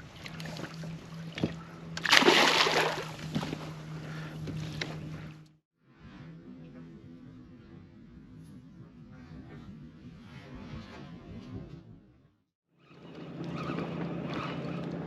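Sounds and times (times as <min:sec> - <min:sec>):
water splashing beside boat: 0:00.0 - 0:05.4
steady low hum: 0:00.0 - 0:12.1.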